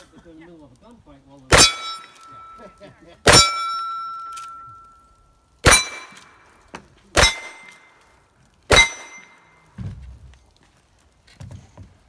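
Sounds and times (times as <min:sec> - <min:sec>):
shots hitting steel targets: 0:01.5 - 0:05.0, 0:05.6 - 0:08.1, 0:08.7 - 0:09.8
soft low thump: 0:09.8 - 0:10.3.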